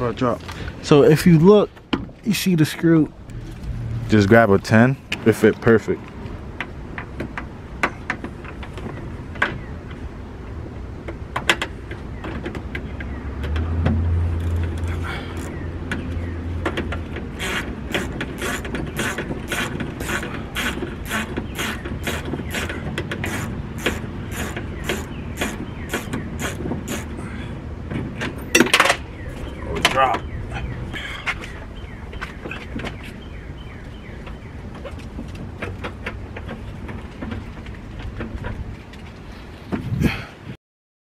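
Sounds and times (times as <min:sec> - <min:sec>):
low hum: 0:03.0 - 0:06.6
ratchet wrench clicking: 0:17.4 - 0:27.1.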